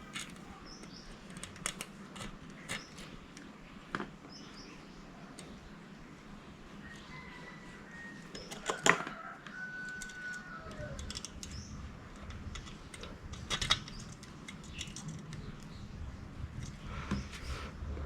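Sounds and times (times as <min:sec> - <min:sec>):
small hard parts clinking: 0:00.0 - 0:03.2, 0:09.8 - 0:15.8.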